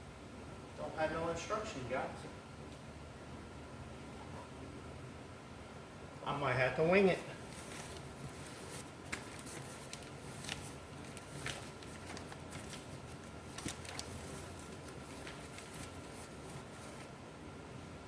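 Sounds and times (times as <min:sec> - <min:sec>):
faint steady hum: 0:00.0 - 0:18.0
packaging rustling: 0:07.2 - 0:17.1.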